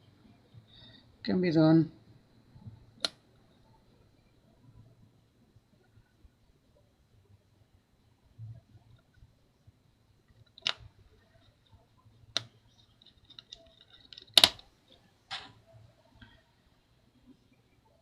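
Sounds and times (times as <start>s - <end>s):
tiny screws clicking on metal case: 12.4s - 14.6s.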